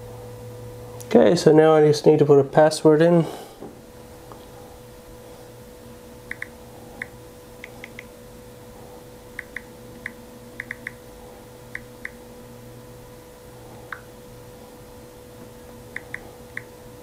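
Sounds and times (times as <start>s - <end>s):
faint steady hum: 0.0s - 17.0s
phone keyboard clicks: 9.4s - 11.0s.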